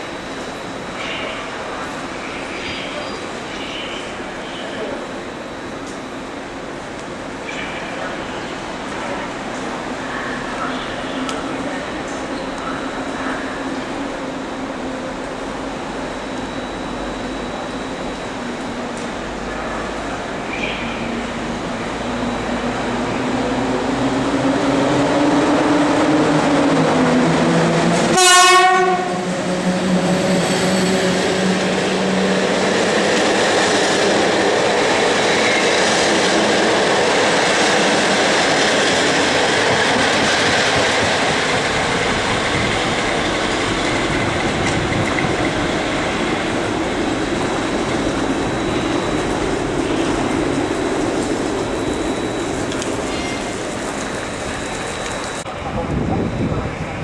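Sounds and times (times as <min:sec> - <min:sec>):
electric locomotive motor hum: 0:00.0 - 0:57.0
train wheels rumbling and clattering: 0:04.8 - 0:57.0
train horn blast: 0:28.1 - 0:29.3.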